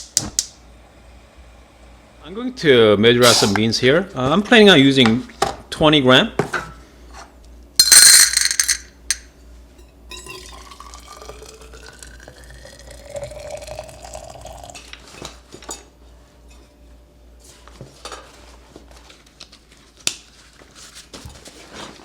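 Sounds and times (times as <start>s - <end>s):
hot water pouring into bottle: 10.1s - 14.9s.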